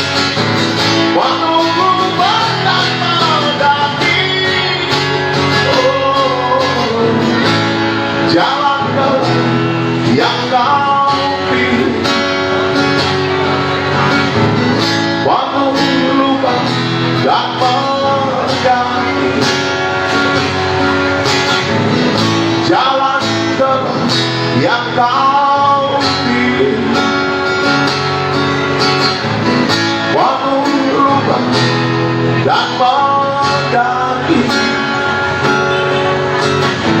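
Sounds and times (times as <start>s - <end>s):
sliding guitar lead line: 0.0s - 37.0s
strummed guitar backing: 0.0s - 37.0s.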